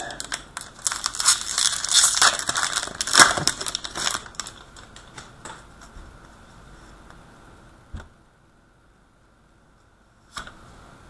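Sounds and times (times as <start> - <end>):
cards and wrapper crackling: 0.0 - 5.6.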